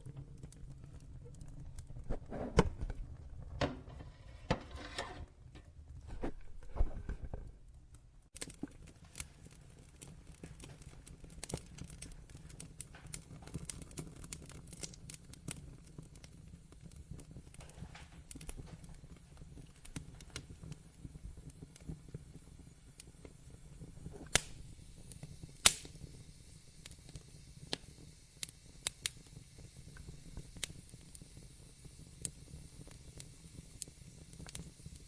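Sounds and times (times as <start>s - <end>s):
wood fire crackling: 0.0s - 35.0s
fire hissing: 8.3s - 35.0s.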